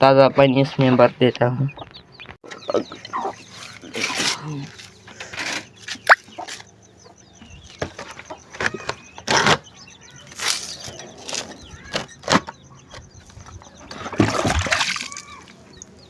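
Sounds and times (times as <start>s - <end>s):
chickens clucking: 0.0s - 16.0s
chicks peeping: 0.0s - 16.0s.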